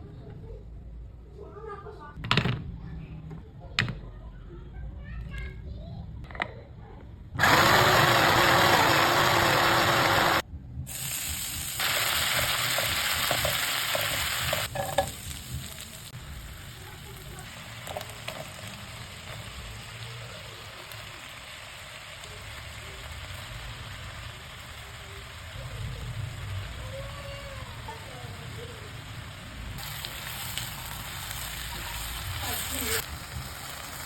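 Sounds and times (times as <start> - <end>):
oil sizzling in a hot pan: 7.4 - 34.0.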